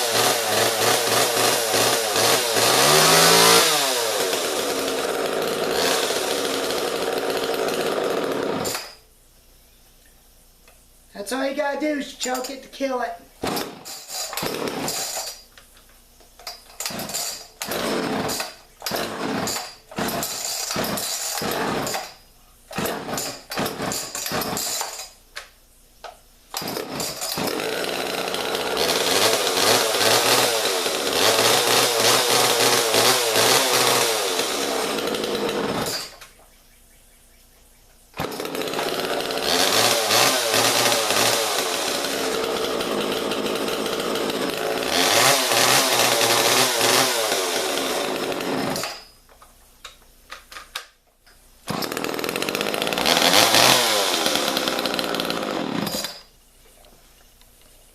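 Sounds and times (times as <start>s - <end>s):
chainsaw pull-starting and revving: 0.0s - 9.0s, 13.4s - 15.4s, 16.5s - 25.2s, 26.5s - 36.3s, 38.2s - 49.1s, 51.6s - 56.3s.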